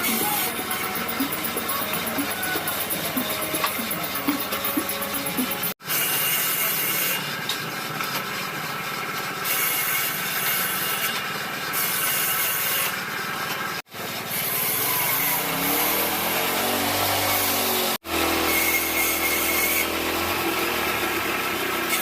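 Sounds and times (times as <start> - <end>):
motor pitch rising and falling: 0.0 - 5.8, 14.4 - 21.5
power tool cutting hardwood: 14.0 - 22.0.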